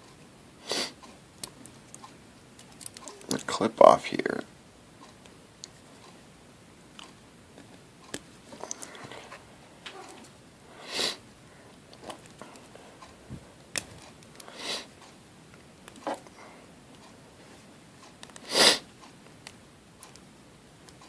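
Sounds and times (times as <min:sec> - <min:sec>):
person sniffing: 0:00.6 - 0:01.0, 0:10.7 - 0:11.2, 0:14.4 - 0:14.9, 0:18.4 - 0:18.9
tweezers clicking and scraping: 0:01.4 - 0:03.4.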